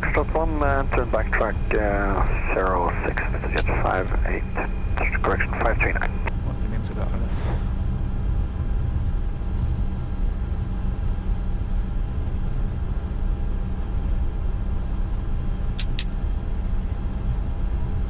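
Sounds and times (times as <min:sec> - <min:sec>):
constant tones: 0:00.0 - 0:06.3
aircraft engines rumbling in cockpit: 0:00.0 - 0:18.0.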